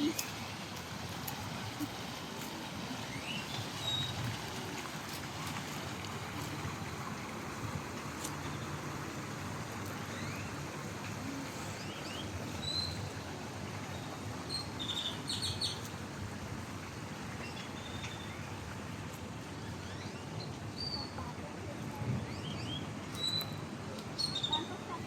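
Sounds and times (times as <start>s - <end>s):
water rushing over small cascades: 0.0s - 20.7s
birds chirping: 13.8s - 15.9s.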